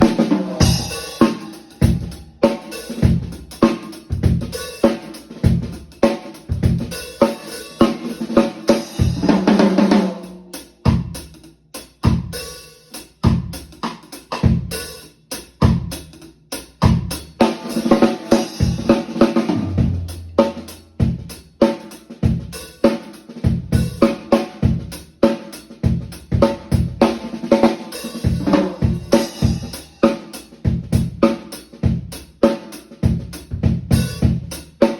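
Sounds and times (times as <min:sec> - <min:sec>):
drum fill: 0:00.0 - 0:11.3, 0:16.8 - 0:25.1, 0:25.8 - 0:32.1
acoustic drum kit groove: 0:00.0 - 0:34.9.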